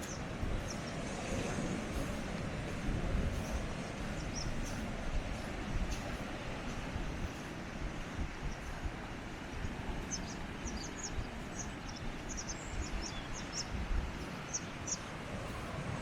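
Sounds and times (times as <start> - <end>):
sea washing against rocks: 0.0 - 10.7
small bird chirping: 10.0 - 13.8.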